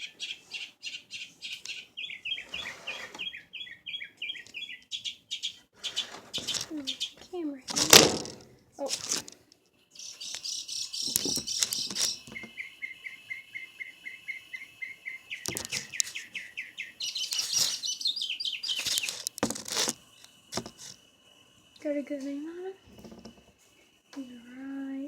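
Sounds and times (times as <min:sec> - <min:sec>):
songbird chirping and trilling: 0:00.0 - 0:07.9, 0:08.8 - 0:25.0
short knocks or rustles: 0:07.7 - 0:09.4, 0:18.8 - 0:21.0, 0:22.9 - 0:23.6.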